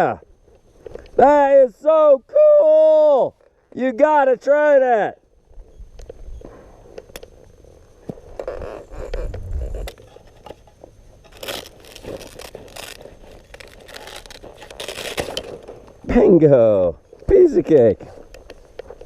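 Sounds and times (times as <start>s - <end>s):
fabric rustling and crinkling: 11.2s - 15.8s.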